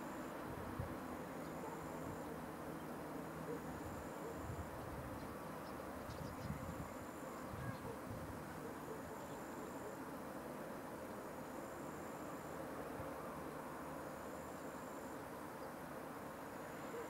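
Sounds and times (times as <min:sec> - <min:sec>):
insect high-pitched buzz: 0:11.0 - 0:17.0.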